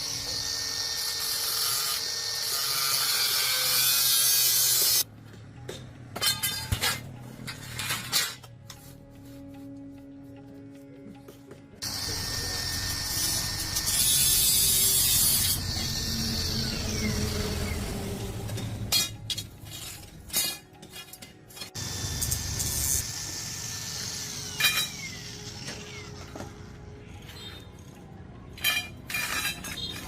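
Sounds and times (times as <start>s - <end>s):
small electric motor running: 0.0s - 5.0s, 11.8s - 18.4s, 21.8s - 26.6s.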